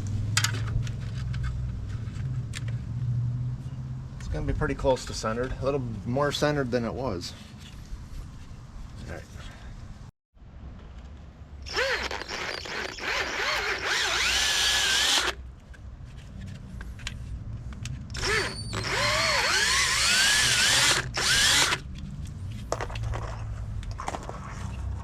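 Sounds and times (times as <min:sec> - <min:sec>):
electric drill drilling: 0:11.7 - 0:15.4, 0:18.2 - 0:21.8.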